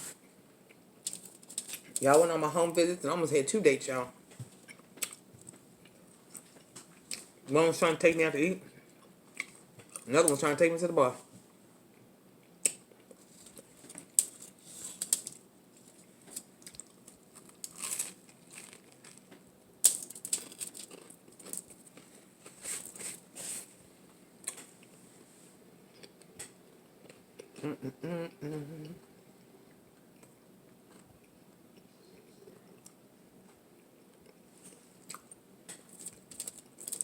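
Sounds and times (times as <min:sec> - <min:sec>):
rustling and crinkling: 0:01.0 - 0:02.3, 0:13.1 - 0:25.6
person humming: 0:27.6 - 0:29.1.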